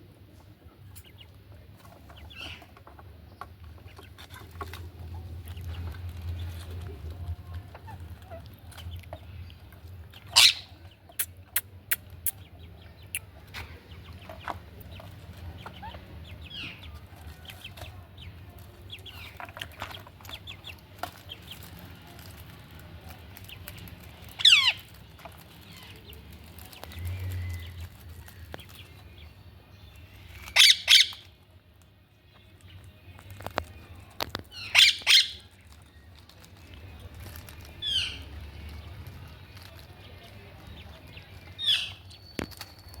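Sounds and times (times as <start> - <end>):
parakeet squawking: 10.3 - 10.8, 24.3 - 24.8, 30.4 - 31.3, 34.6 - 35.4.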